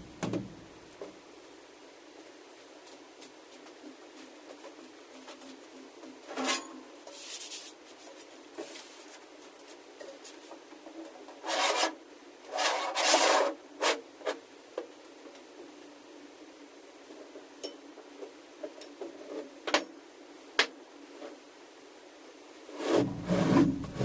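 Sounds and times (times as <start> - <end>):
hard object scraping: 11.4 - 14.0, 22.7 - 24.0.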